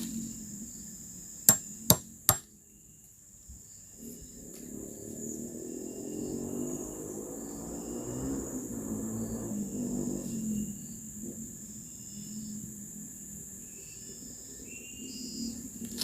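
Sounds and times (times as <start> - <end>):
high insect drone: 0.0 - 16.0
tool knocking on bamboo: 1.5 - 2.4.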